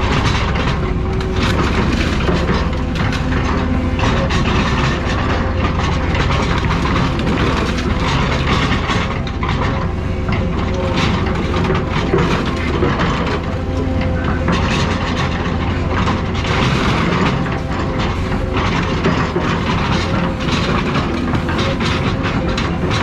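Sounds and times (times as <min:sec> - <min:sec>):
low engine rumble: 0:00.0 - 0:23.0
metal crunching and clanking: 0:00.0 - 0:23.0.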